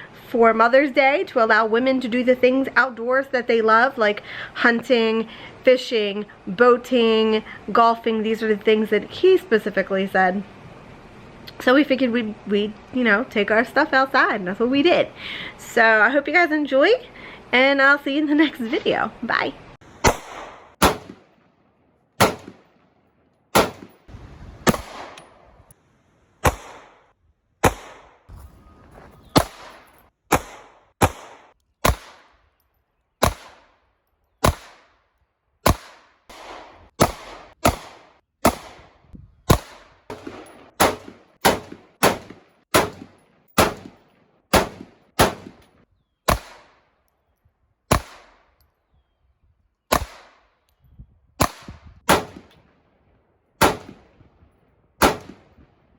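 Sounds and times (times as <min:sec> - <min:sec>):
gunshots with echo: 0:20.0 - 0:21.3, 0:22.2 - 0:22.7, 0:23.6 - 0:24.0, 0:24.7 - 0:25.2, 0:26.4 - 0:27.0, 0:27.6 - 0:28.3, 0:29.4 - 0:32.3, 0:35.7 - 0:38.9, 0:39.5 - 0:45.6, 0:51.4 - 0:52.5, 0:53.6 - 0:54.1, 0:55.0 - 0:55.6.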